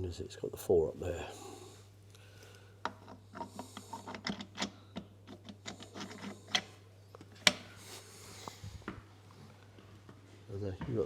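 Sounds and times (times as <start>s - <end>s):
metal parts and tools clicking: 2.8s - 7.6s.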